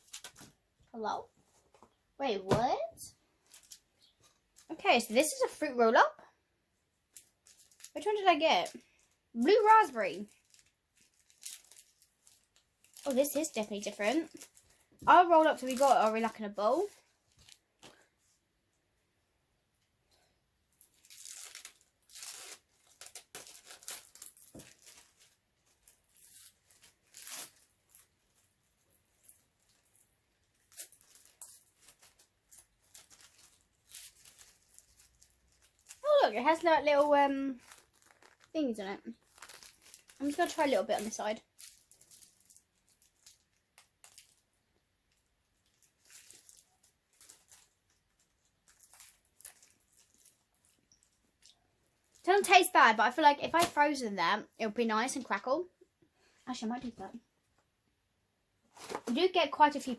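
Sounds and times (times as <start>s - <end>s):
plastic wrapping tearing and crinkling: 0.0s - 0.6s, 3.4s - 5.4s, 7.0s - 18.1s, 20.7s - 52.6s.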